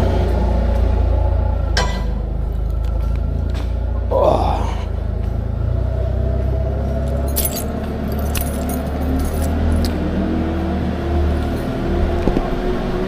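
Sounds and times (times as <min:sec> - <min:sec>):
van engine running: 0:00.0 - 0:13.0
keys jingling: 0:07.0 - 0:10.0.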